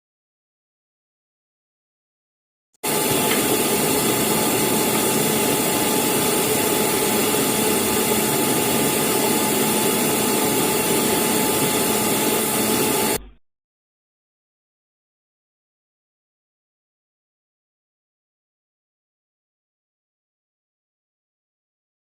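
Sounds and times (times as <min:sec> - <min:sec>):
machine hiss with low hum: 0:02.8 - 0:13.3.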